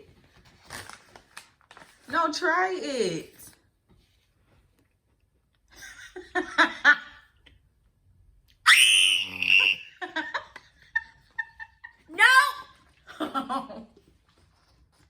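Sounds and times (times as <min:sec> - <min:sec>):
girl laughing: 0:08.7 - 0:12.5.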